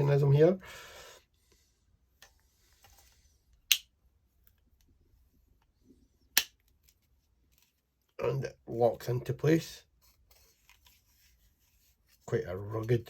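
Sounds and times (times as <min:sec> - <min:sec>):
handling rustle and clicks: 0:02.1 - 0:03.7, 0:06.6 - 0:08.2, 0:09.9 - 0:13.0.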